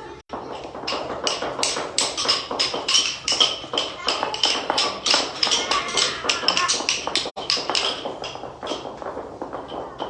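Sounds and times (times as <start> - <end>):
quick uneven taps: 0.3 - 10.0.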